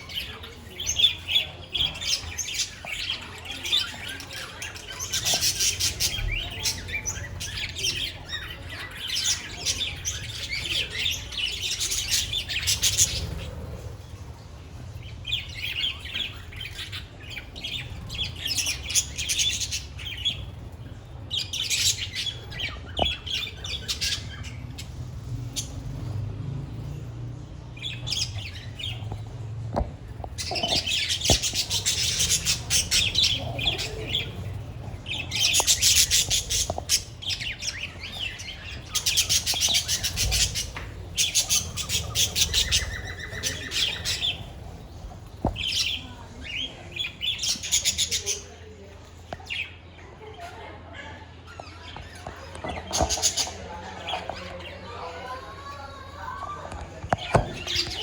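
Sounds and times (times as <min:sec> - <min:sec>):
budgerigars chirping and chattering: 0:00.0 - 0:55.3, 0:57.0 - 0:58.0.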